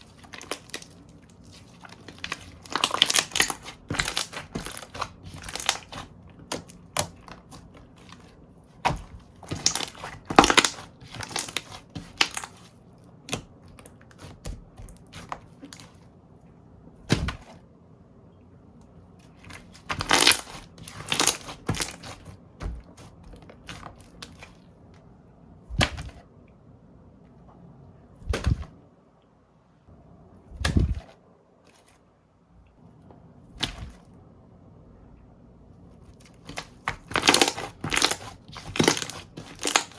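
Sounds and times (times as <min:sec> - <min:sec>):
slime crackling and popping: 0:00.0 - 0:12.6, 0:19.4 - 0:22.8, 0:36.4 - 0:39.9
dull thuds: 0:17.0 - 0:17.6, 0:28.2 - 0:28.7.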